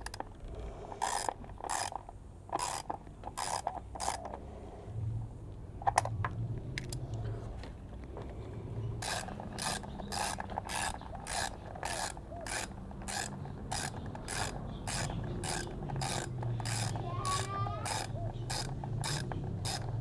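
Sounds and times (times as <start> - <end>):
ratchet wrench clicking: 0.0 - 0.3, 1.0 - 4.4, 9.0 - 20.0.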